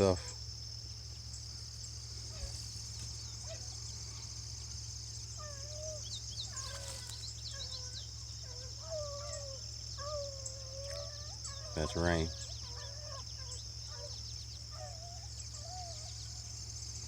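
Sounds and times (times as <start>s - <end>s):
insects chirring: 0.0s - 17.0s
hound baying: 5.3s - 16.4s.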